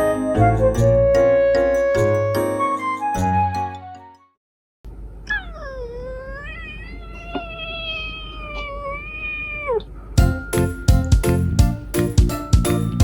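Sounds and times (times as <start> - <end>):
music: 0.0 - 4.4, 10.2 - 13.0
cat meowing: 5.3 - 10.0.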